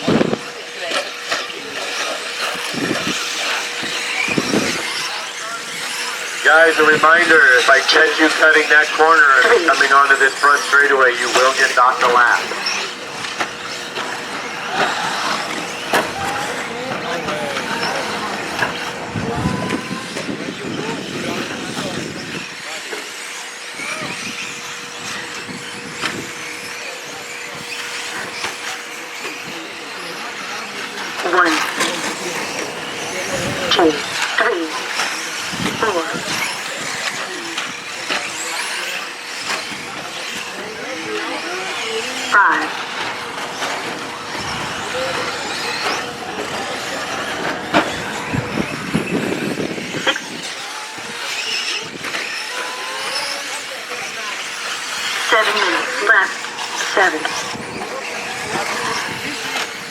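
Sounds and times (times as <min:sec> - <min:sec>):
electric motor whine: 0:00.0 - 0:59.9
tyres on dirt: 0:04.0 - 0:20.3, 0:29.9 - 0:37.0, 0:37.7 - 0:50.3.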